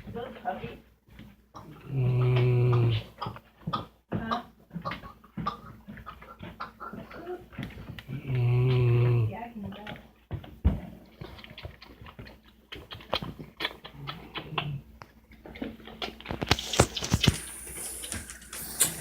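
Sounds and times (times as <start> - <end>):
dog snoring: 1.7 - 3.2, 8.0 - 9.3
high hiss: 16.6 - 19.0.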